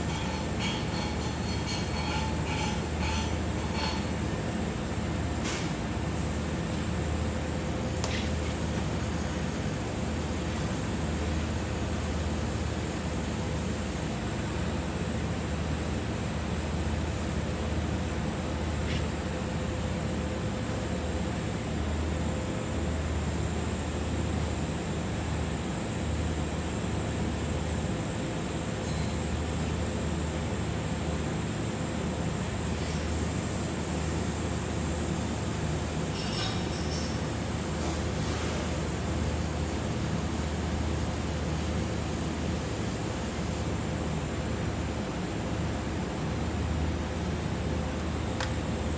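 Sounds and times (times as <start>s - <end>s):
welding arc hissing: 6.4s - 11.6s.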